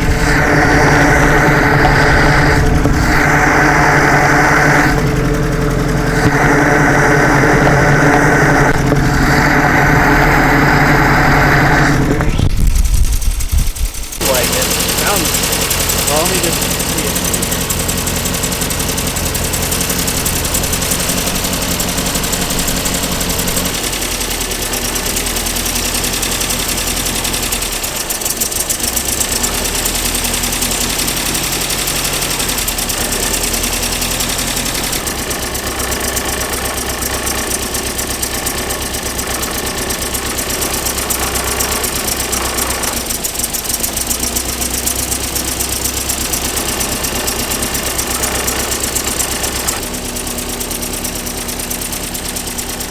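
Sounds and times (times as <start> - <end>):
car engine idling: 0.0 - 52.9.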